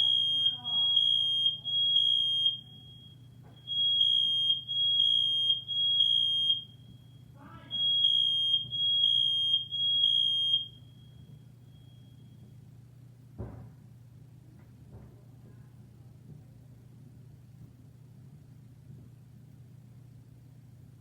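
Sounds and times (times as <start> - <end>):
smoke alarm beeping: 0.0 - 12.6
faint alarm: 0.0 - 12.7.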